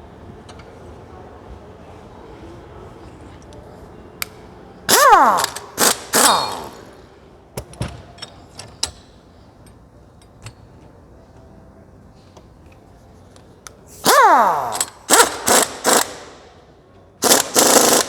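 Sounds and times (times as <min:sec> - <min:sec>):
impact wrench whining: 0:04.9 - 0:07.1, 0:14.0 - 0:16.5, 0:17.2 - 0:18.0
light metallic clicks and knocks: 0:07.6 - 0:11.0.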